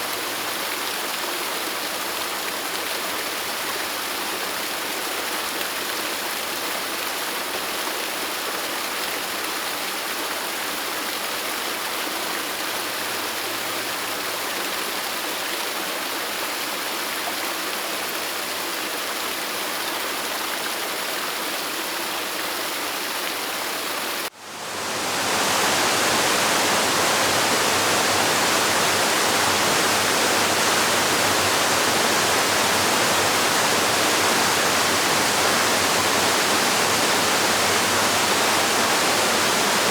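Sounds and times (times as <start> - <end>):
waterfall roaring: 24.3 - 39.9.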